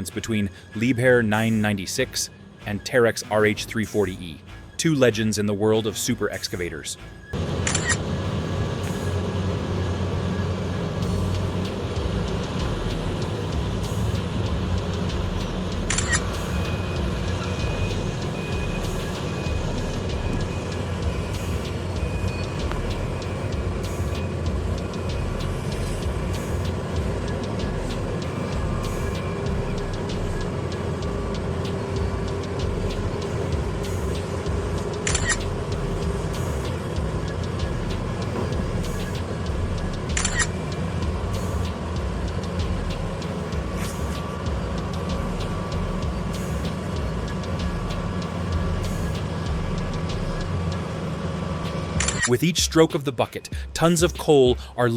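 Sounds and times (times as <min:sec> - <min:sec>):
heavy machinery diesel rumble: 0:07.1 - 0:52.8
high warning beep: 0:15.8 - 0:37.9.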